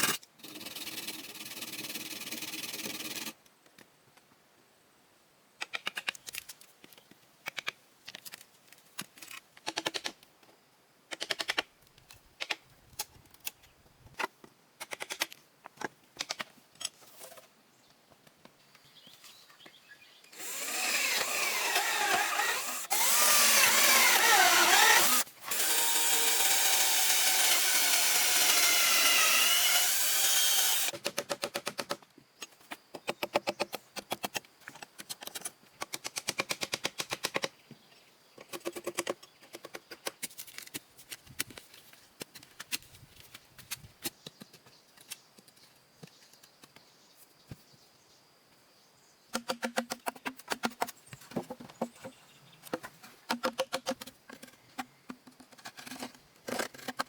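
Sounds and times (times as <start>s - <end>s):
power tool running: 20.4s - 30.9s.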